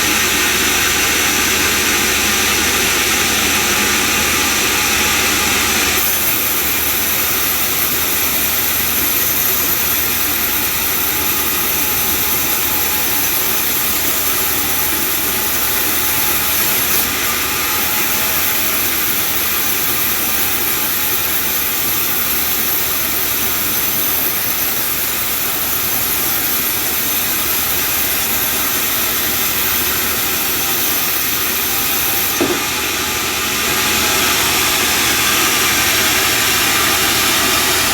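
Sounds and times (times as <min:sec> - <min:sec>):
sawmill machinery running: 0:00.0 - 0:37.9
short knock: 0:32.4 - 0:32.8.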